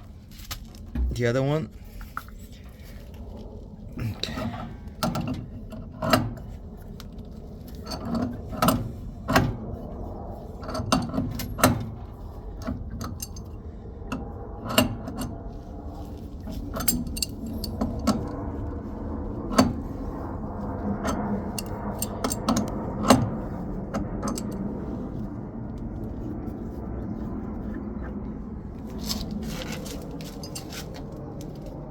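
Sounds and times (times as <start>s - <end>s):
wrenches clinking on pipe fittings: 13.1s - 13.5s, 16.5s - 18.3s, 30.2s - 30.9s.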